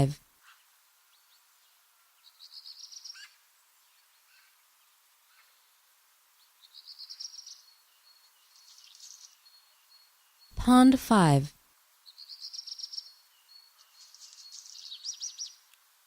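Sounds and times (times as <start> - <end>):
songbirds trilling: 6.4 - 10.5, 12.0 - 15.7
faint bird chirps and whistles: 6.6 - 10.5, 12.0 - 15.7.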